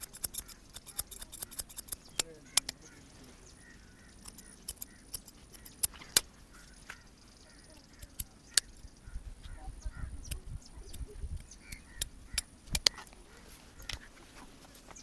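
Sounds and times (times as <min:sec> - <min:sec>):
scissors snipping hair: 0:00.0 - 0:03.3, 0:11.7 - 0:14.1.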